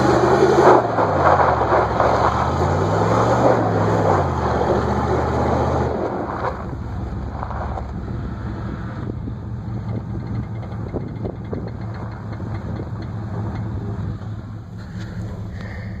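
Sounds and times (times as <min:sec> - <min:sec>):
pickup engine idling: 0:05.9 - 0:16.0.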